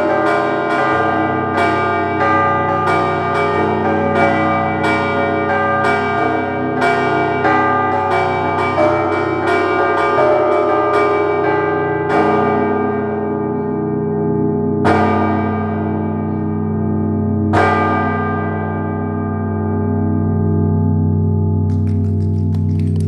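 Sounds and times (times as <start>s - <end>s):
heavy bell striking: 0.0s - 13.8s.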